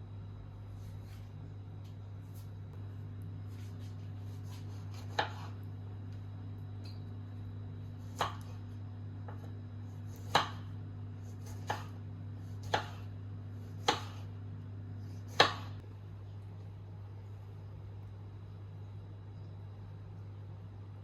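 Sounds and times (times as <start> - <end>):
steady low hum: 0.0 - 21.0
knife chopping on cutting board: 3.8 - 5.6, 8.0 - 8.6, 9.2 - 14.3, 15.2 - 15.8.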